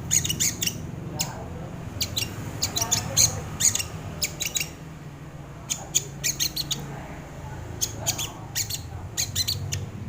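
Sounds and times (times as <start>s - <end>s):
high sharp bird chirps: 0.0s - 1.4s, 2.0s - 4.8s, 5.7s - 6.9s, 7.8s - 9.9s.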